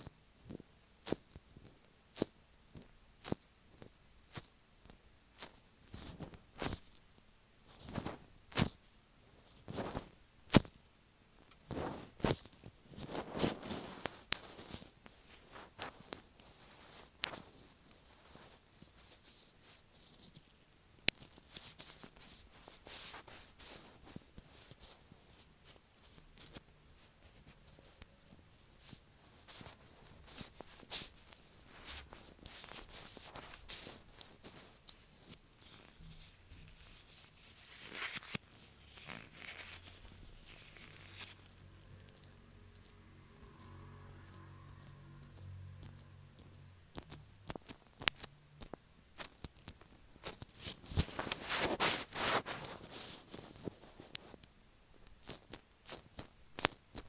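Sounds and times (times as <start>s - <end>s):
gloved fingers rubbing microphone: 50.6s - 54.1s.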